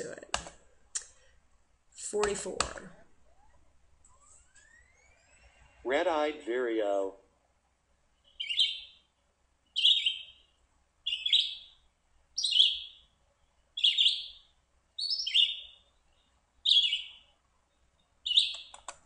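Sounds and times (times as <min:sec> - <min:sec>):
bird singing warbled phrases: 0:08.2 - 0:18.8.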